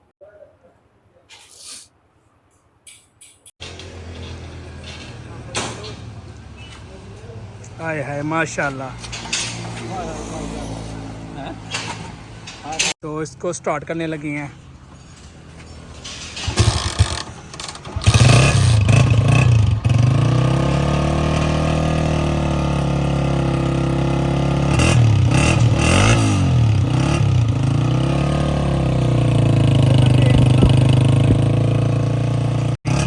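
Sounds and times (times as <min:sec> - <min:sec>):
motorcycle engine starting and revving: 0:03.6 - 0:12.8, 0:15.6 - 0:33.0
motorcycle engine idling: 0:26.6 - 0:32.7.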